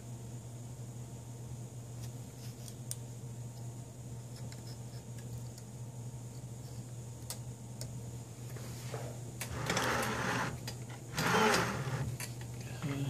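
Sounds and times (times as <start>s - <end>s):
three d printer humming: 9.4s - 13.0s.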